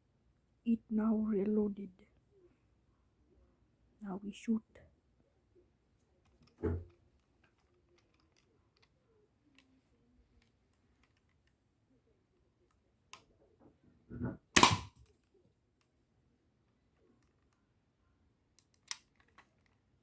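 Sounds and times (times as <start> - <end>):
toy blaster click: 14.6 - 14.9
toy blaster firing snap: 14.6 - 15.0.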